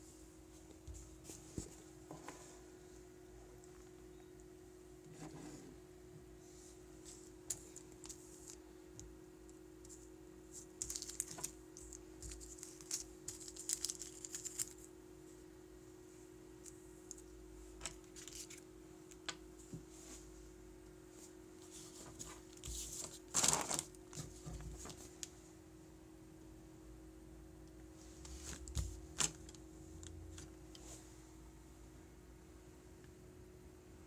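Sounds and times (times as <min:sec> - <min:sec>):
packaging rustling and clicking: 0:10.8 - 0:14.8, 0:22.5 - 0:25.0, 0:28.5 - 0:30.6.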